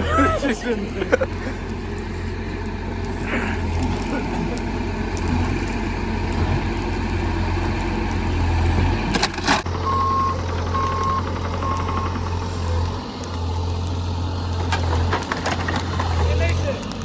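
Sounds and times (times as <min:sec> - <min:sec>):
diesel engine running: 0:00.0 - 0:17.0
warning beeps: 0:09.8 - 0:12.2.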